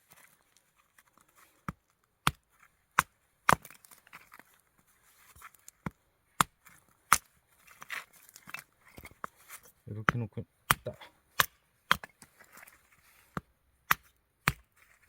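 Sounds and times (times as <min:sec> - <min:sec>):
axe chopping wood: 0:02.2 - 0:02.4, 0:03.0 - 0:03.8, 0:05.8 - 0:08.0, 0:10.1 - 0:12.6, 0:13.3 - 0:14.7.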